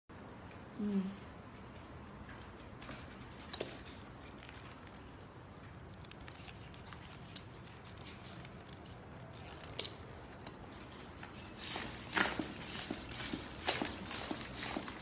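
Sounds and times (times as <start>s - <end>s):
plastic film crinkling: 4.0s - 10.3s.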